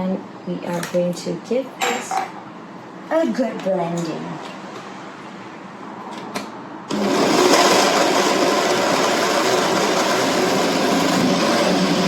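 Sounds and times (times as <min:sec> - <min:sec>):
electric blender running: 0:06.9 - 0:12.0.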